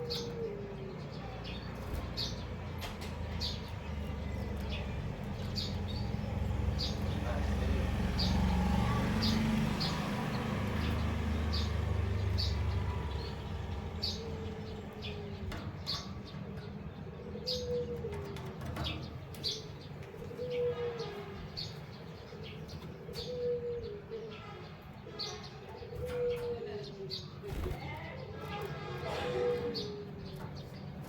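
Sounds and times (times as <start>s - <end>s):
finches chirping: 0.0s - 18.0s
low falling coo: 17.2s - 18.7s, 23.0s - 24.3s, 25.8s - 27.1s.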